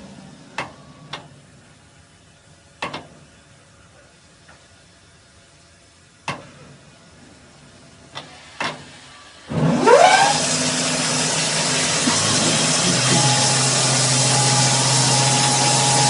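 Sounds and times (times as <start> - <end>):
engine starting and revving: 9.5 - 16.0.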